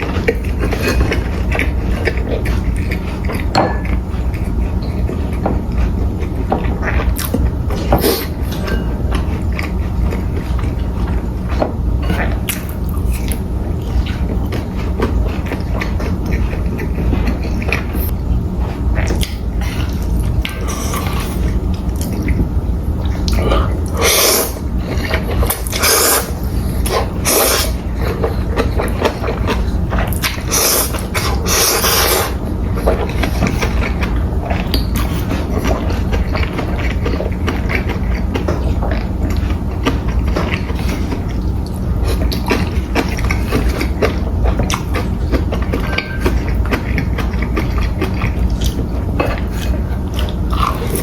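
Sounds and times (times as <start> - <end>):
chewing: 0.0 - 51.0
steady low hum: 0.0 - 51.0
slurping noodles: 23.2 - 36.5.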